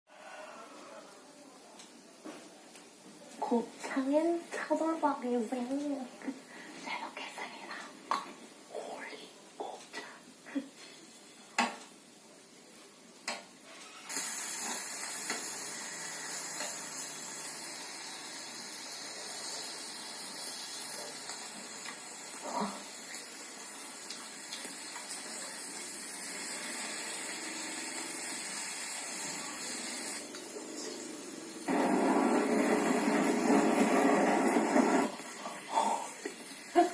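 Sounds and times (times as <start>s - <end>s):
meat sizzling on a grill: 13.8s - 36.9s.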